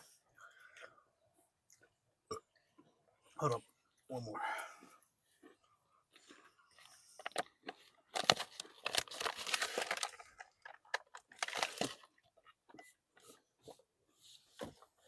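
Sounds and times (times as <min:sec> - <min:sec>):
food packaging crinkling: 0:07.2 - 0:12.6.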